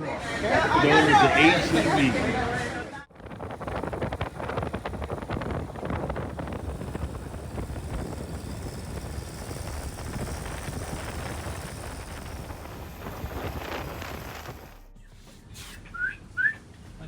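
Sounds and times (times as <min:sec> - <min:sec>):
wind buffeting microphone: 0:00.4 - 0:14.8
atv engine running: 0:03.1 - 0:14.9.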